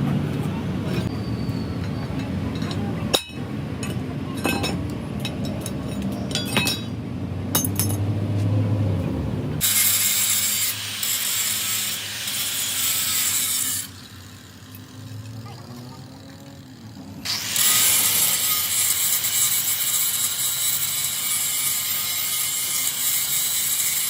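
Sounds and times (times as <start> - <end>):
loud steady hiss: 9.6 - 14.0.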